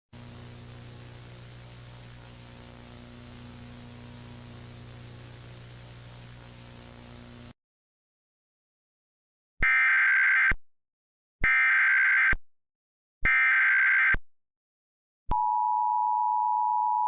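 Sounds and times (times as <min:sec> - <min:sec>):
static hiss: 0:00.2 - 0:07.5
steady electrical hum: 0:00.2 - 0:07.5.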